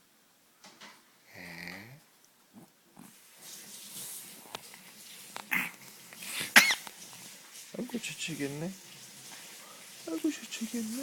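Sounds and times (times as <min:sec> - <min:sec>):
baby snuffling: 0:01.3 - 0:06.9
baby grunting: 0:05.5 - 0:06.8.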